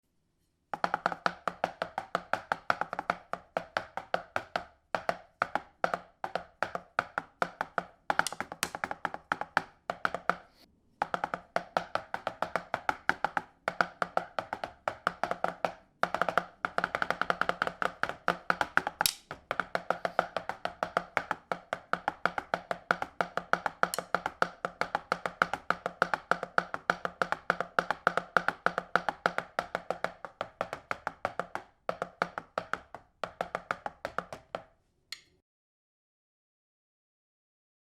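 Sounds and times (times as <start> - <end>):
drum pads tapping: 0.7 - 34.7.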